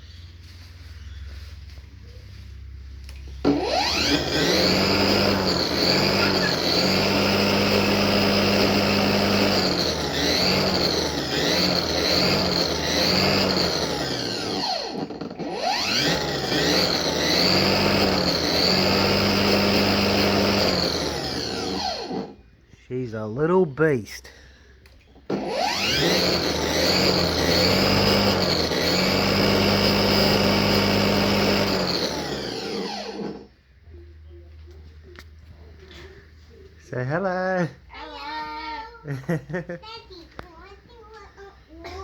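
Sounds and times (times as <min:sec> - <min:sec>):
electric lawnmower humming and whining: 0:03.4 - 0:22.4, 0:25.3 - 0:33.5.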